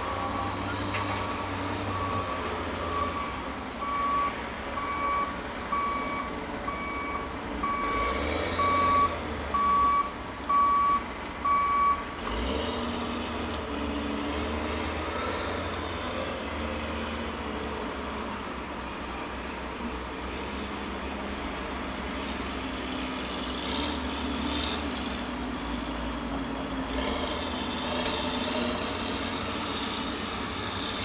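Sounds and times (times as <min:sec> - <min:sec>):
diesel machinery rumble: 0:00.0 - 0:31.0
backup alarm beeping: 0:01.8 - 0:12.0.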